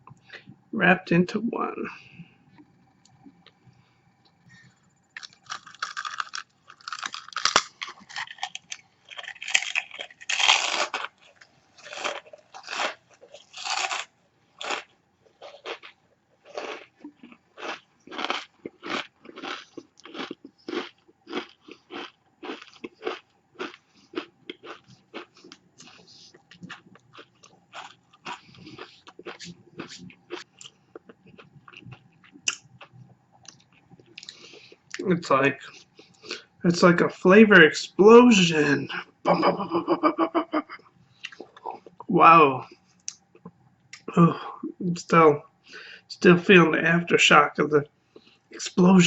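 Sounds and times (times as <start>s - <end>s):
person chewing potato chips: 5.0s - 35.0s, 41.2s - 42.1s.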